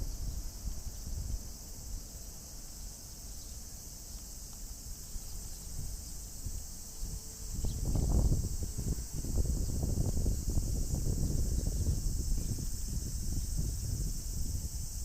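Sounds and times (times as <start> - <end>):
wind rumble on microphone: 0.0 - 2.1, 5.3 - 15.0
cicadas chorus: 0.0 - 15.0.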